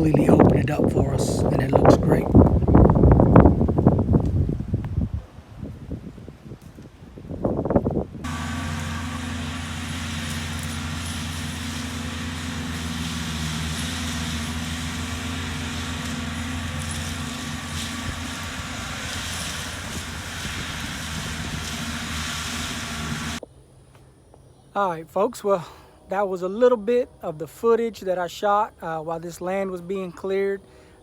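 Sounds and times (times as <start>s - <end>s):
skid steer mulcher running: 8.2s - 23.4s.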